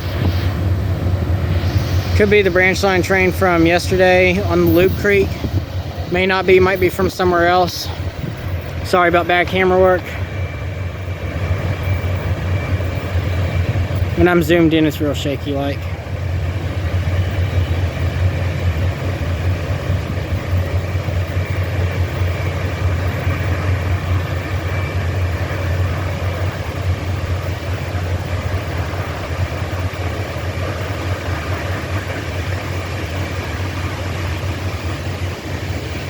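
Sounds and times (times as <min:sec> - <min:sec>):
train wheels rumbling on rail: 0:00.0 - 0:36.0.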